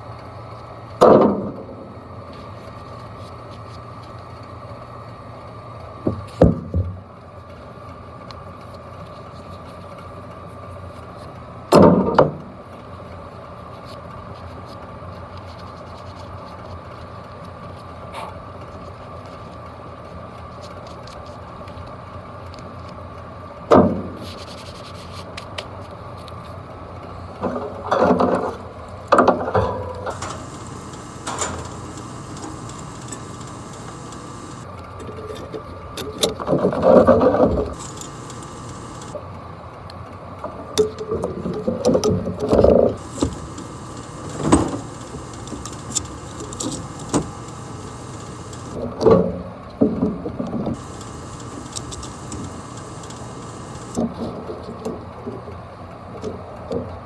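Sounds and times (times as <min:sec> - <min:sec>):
machinery humming: 0:29.5 - 0:34.7, 0:37.2 - 0:39.2, 0:43.0 - 0:48.8, 0:50.7 - 0:54.0.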